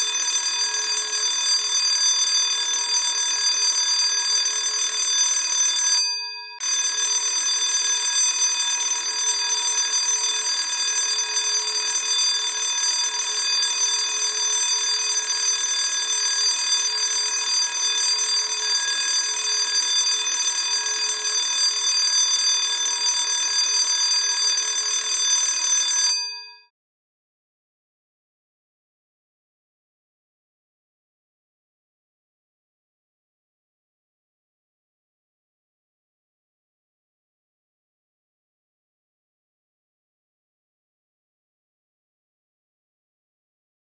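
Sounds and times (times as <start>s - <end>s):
school bell ringing: 0.0s - 26.5s.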